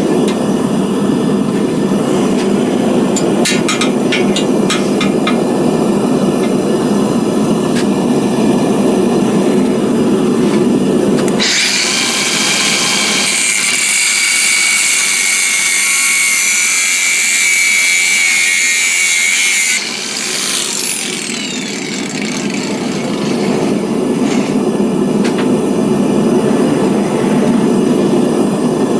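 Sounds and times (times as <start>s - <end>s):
grinder cutting steel bar: 11.2s - 24.5s.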